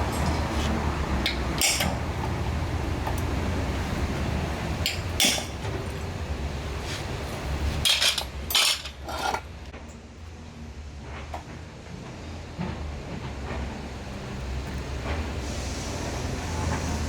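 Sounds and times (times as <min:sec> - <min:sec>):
metal tools clinking: 0:07.8 - 0:09.5.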